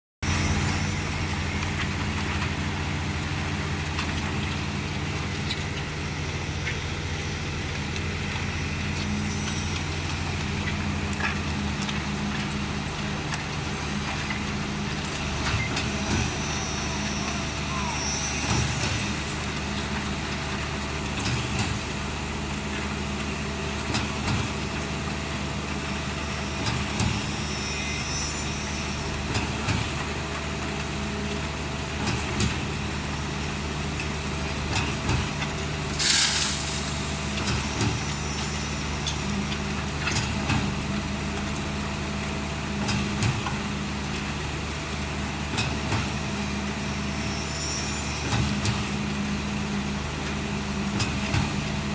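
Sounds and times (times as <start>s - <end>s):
concrete pump engine hum: 0.2s - 51.9s.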